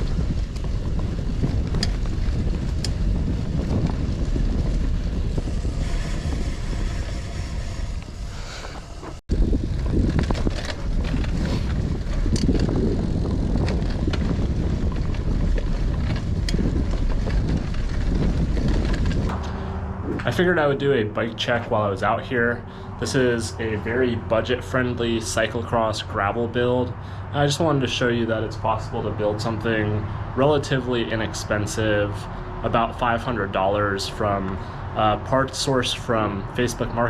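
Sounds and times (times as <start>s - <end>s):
bike clicks and rattles: 0.0s - 19.7s
bike tyre rumble on dirt: 0.0s - 37.0s
wind buffeting microphone: 0.0s - 37.0s.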